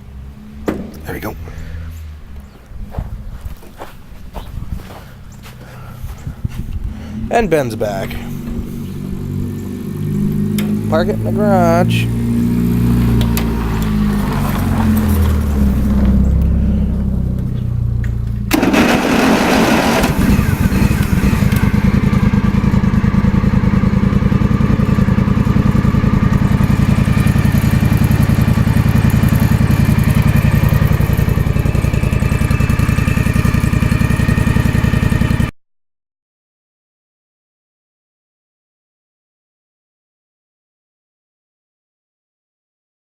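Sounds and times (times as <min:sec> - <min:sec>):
lawn mower engine running: 0:05.6 - 0:35.5.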